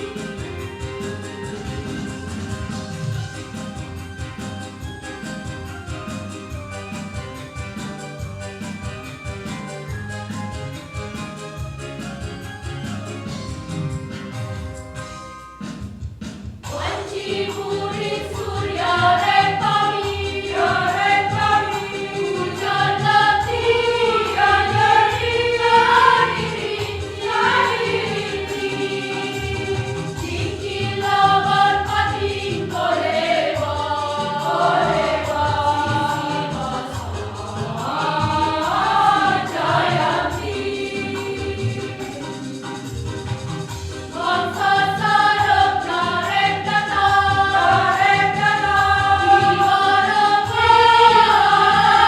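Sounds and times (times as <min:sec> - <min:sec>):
choir singing: 0:00.0 - 0:03.9, 0:16.6 - 0:52.0.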